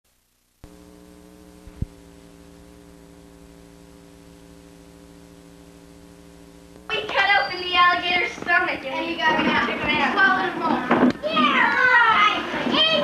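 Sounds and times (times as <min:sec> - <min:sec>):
steady electrical hum: 0:00.1 - 0:13.0.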